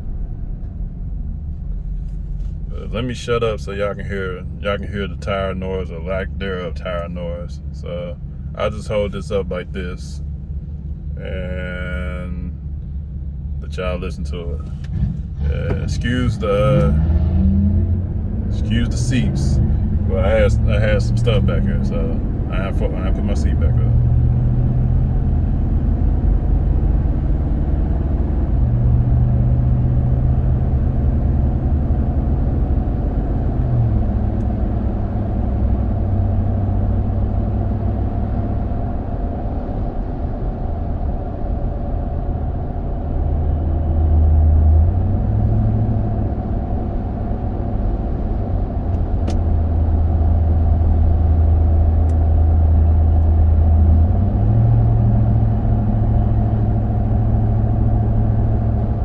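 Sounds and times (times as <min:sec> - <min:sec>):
road and tire noise in car: 0:00.0 - 0:59.0.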